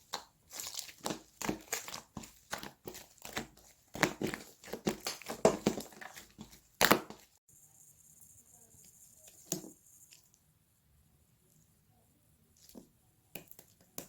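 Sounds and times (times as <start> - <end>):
slime squelching and popping: 0.0 - 7.4.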